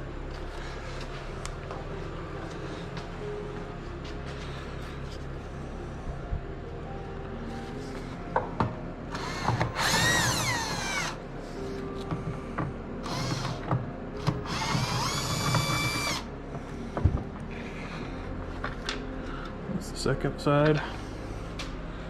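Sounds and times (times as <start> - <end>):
power drill motor whining: 9.1 - 11.2, 13.0 - 16.3.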